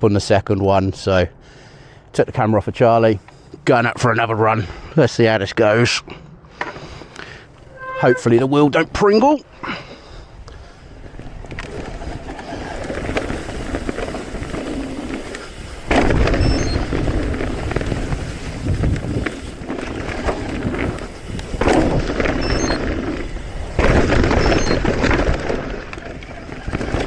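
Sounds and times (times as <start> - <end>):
bike rattling: 10.7 - 27.0
bike tyres rumbling over dirt: 10.9 - 27.0.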